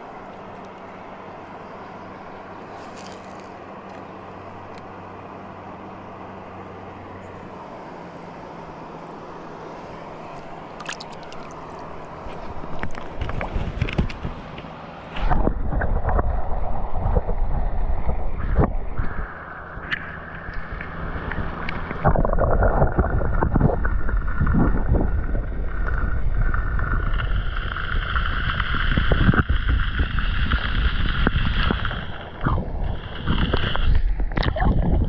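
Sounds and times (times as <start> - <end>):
steady high whine: 0.0 - 35.0
rushing river water: 7.4 - 15.3
wind buffeting microphone: 11.2 - 35.0.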